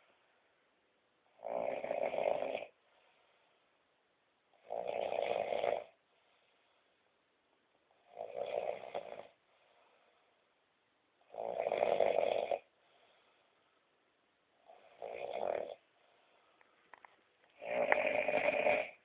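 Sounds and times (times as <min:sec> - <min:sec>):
quiet breaths: 0:00.0 - 0:19.0
person snoring loudly: 0:01.4 - 0:02.8, 0:04.6 - 0:05.9, 0:08.0 - 0:09.4, 0:11.3 - 0:12.7, 0:14.7 - 0:15.8, 0:17.6 - 0:19.0.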